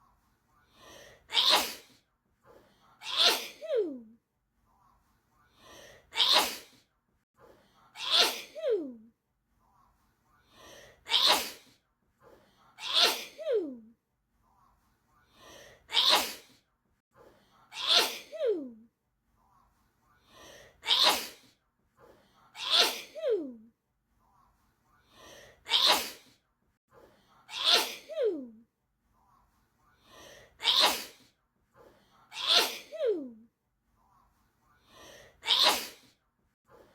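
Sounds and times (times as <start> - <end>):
person sneezing: 1.3 - 2.0, 3.0 - 4.0, 6.2 - 6.8, 8.0 - 8.9, 11.1 - 11.8, 12.8 - 13.7, 15.9 - 16.6, 17.8 - 18.6, 20.8 - 21.5, 22.6 - 23.5, 25.7 - 26.4, 27.5 - 28.4, 30.6 - 31.3, 32.4 - 33.3, 35.4 - 36.1
intake of breath: 34.2 - 35.4.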